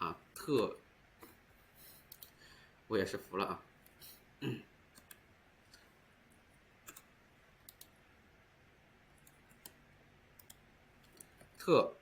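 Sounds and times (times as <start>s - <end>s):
computer clicks: 4.9s - 5.9s, 6.8s - 8.0s, 9.2s - 9.8s, 10.4s - 11.6s.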